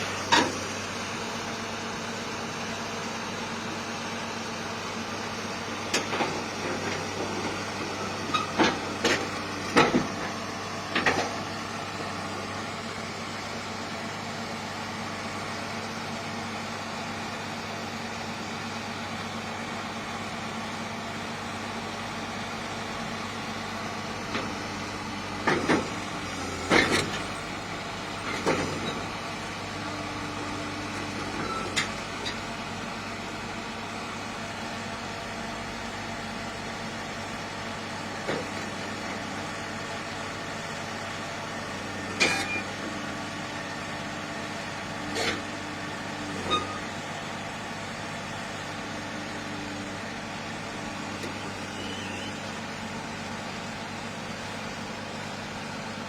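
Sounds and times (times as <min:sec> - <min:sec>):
heavy diesel engine running: 0:00.0 - 0:56.0.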